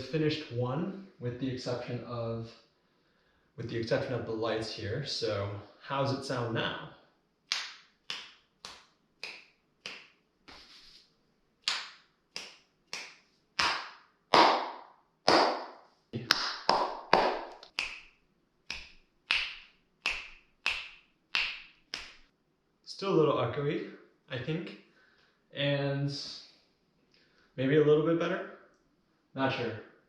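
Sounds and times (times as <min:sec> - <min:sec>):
hand claps echoing in room: 0:07.5 - 0:11.0, 0:11.6 - 0:22.3.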